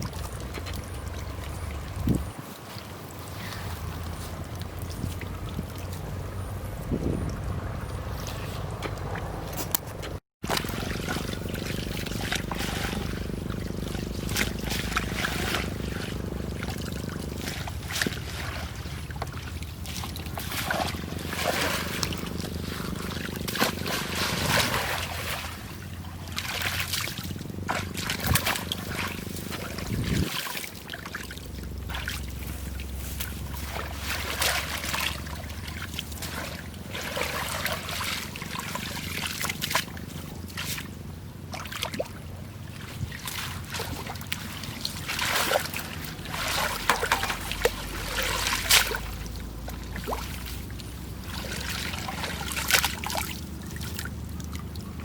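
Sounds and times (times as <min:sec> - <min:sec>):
water trickling and dripping: 0:00.0 - 0:09.2
water splashing and sloshing: 0:00.0 - 0:55.0.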